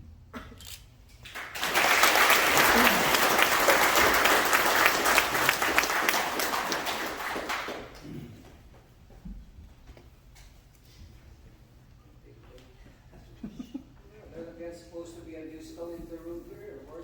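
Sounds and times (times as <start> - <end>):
roomful of people applauding: 1.2 - 8.5.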